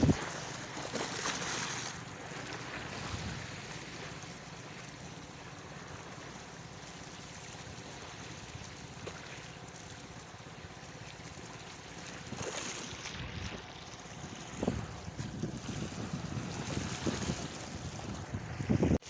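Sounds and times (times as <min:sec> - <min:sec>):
wind buffeting microphone: 0:00.0 - 0:00.6, 0:02.8 - 0:03.7, 0:12.2 - 0:19.0
water rushing past: 0:00.0 - 0:09.9
boat motor running: 0:00.0 - 0:19.0.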